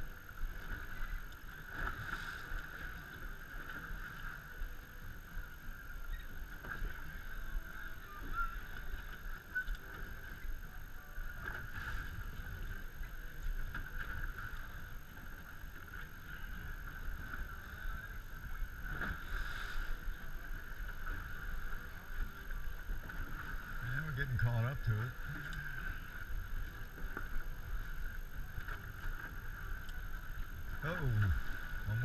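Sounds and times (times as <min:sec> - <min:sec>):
boat motor running: 0:00.0 - 0:32.0
water wash: 0:28.2 - 0:32.0.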